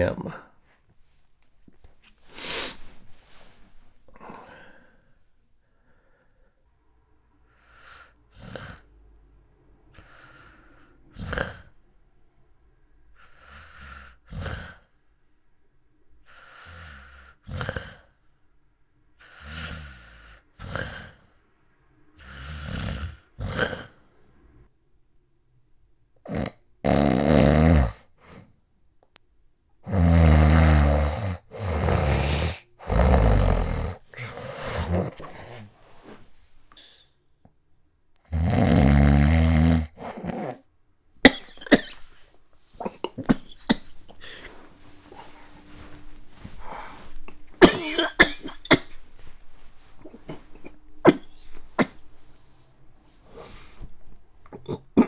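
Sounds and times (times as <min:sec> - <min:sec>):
man snoring loudly: 0:26.3 - 0:28.0, 0:29.9 - 0:35.6, 0:38.3 - 0:40.6
man clearing his throat: 0:41.3 - 0:42.2, 0:42.8 - 0:45.4, 0:46.4 - 0:49.0, 0:50.0 - 0:52.0, 0:54.5 - 0:55.0
man coughing: 0:41.3 - 0:42.2, 0:42.8 - 0:45.4, 0:46.3 - 0:49.1, 0:50.0 - 0:52.1.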